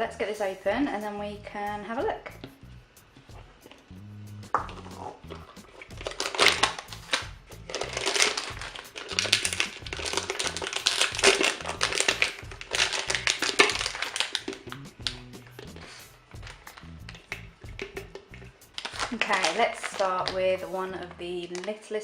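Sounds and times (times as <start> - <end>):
background music: 0.0 - 22.0
plastic packaging crinkling: 4.7 - 22.0.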